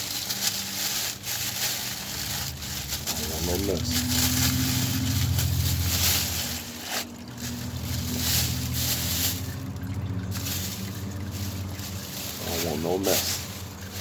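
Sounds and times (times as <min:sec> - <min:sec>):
fluid trickling into plastic bag: 0:00.0 - 0:14.0.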